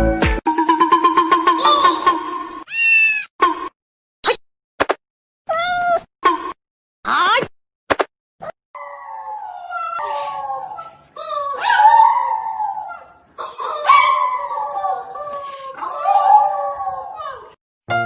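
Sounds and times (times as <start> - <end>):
dog howling: 8.8 - 17.6.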